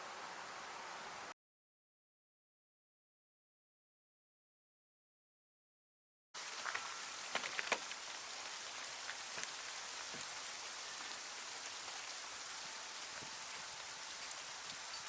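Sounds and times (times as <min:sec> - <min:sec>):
rain or sleet hissing: 0:00.0 - 0:01.4, 0:06.4 - 0:15.0
ice pellets ticking: 0:06.4 - 0:15.0.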